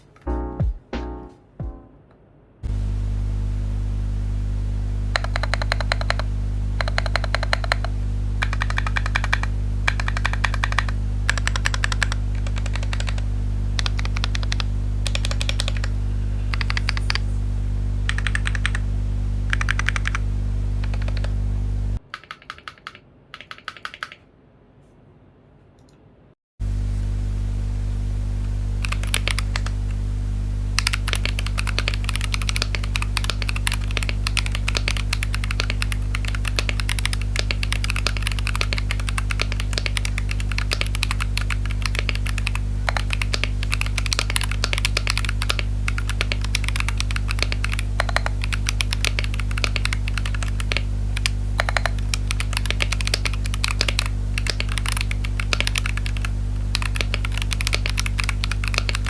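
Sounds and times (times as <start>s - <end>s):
steady low hum: 0.0s - 22.1s, 24.3s - 59.0s
mechanical keyboard typing: 5.1s - 15.9s, 16.5s - 17.2s, 18.1s - 18.8s, 19.5s - 20.2s, 20.8s - 21.4s, 22.0s - 24.2s, 28.8s - 30.0s, 30.8s - 59.0s.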